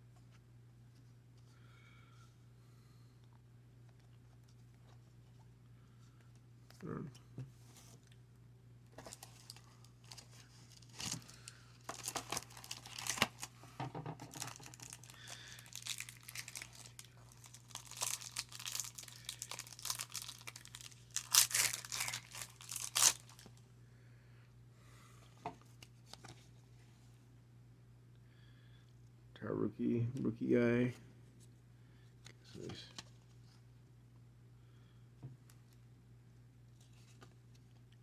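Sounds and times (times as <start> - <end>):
wrappers tearing and crinkling: 9.1 - 13.5, 14.3 - 23.5.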